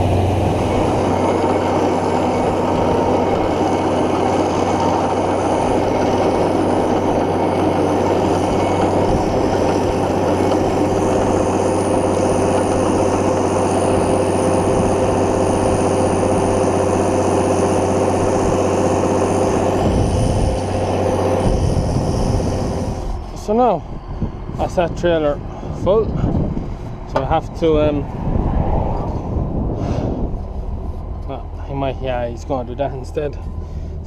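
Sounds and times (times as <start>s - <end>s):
grain mill whining: 0.0s - 25.9s
tractor diesel engine: 0.0s - 28.2s, 29.0s - 34.0s
rough low rumble: 0.0s - 34.0s.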